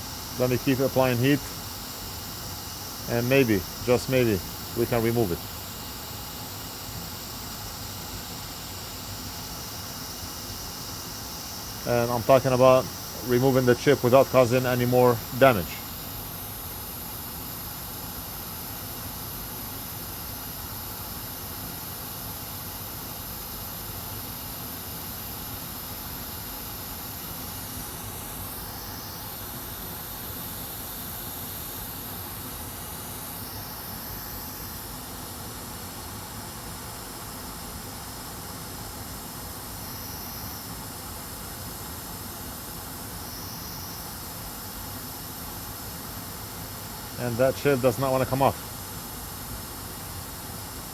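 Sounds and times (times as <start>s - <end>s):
hot air gun hissing: 0.0s - 16.9s.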